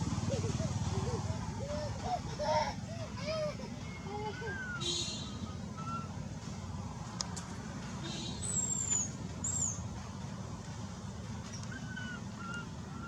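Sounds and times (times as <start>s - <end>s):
low background rumble: 0.0s - 7.8s.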